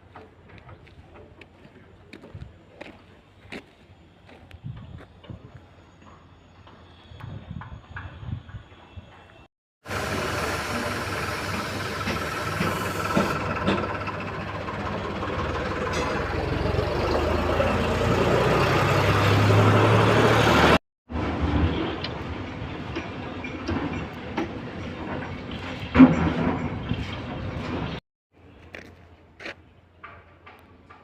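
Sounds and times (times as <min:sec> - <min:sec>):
large engine running: 0:09.8 - 0:28.0.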